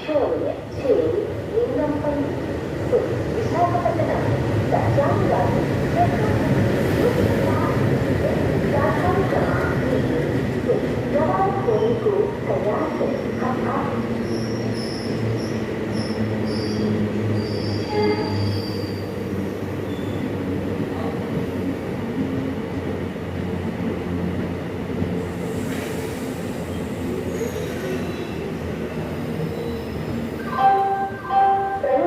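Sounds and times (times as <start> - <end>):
high wheel squeals: 14.2 - 19.2, 29.3 - 30.5.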